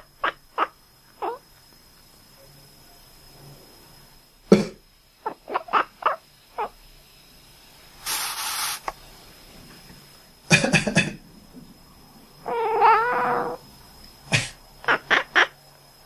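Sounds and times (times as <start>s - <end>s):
cat meowing: 12.4s - 13.6s
person coughing: 14.3s - 14.6s.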